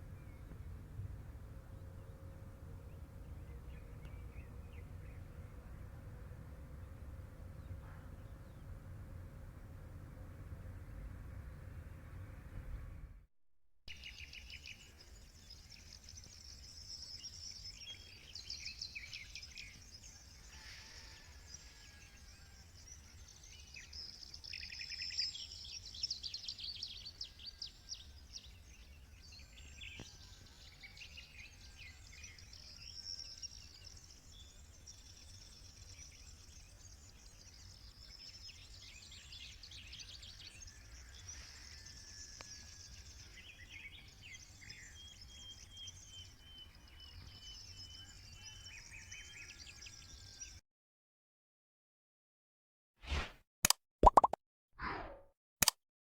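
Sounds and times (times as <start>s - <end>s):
songbirds singing and chirping: 1.4s - 8.8s, 13.9s - 50.6s.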